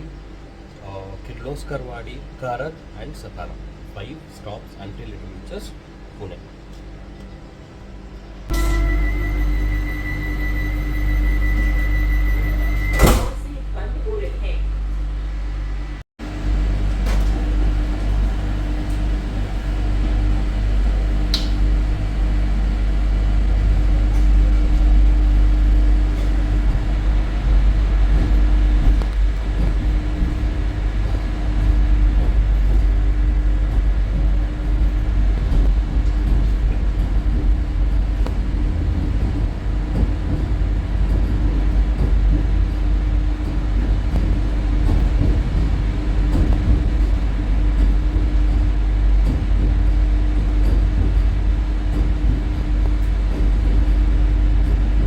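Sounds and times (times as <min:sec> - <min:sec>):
electric train rumbling: 0:00.0 - 0:55.0
brief high squeak: 0:08.5 - 0:13.4.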